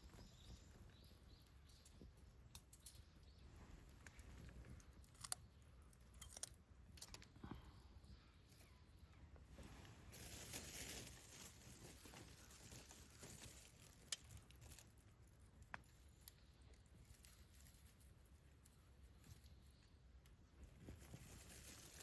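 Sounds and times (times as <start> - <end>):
fire popping and snapping: 0.0 - 7.5, 10.1 - 18.0.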